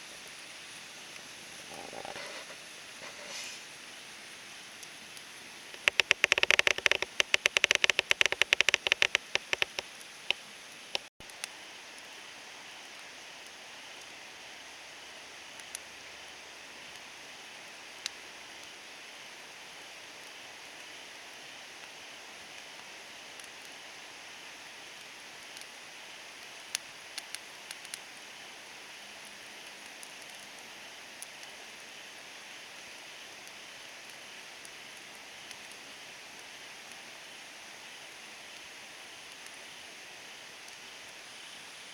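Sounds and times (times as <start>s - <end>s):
wood fire crackling and popping: 5.7s - 12.1s, 26.7s - 28.2s.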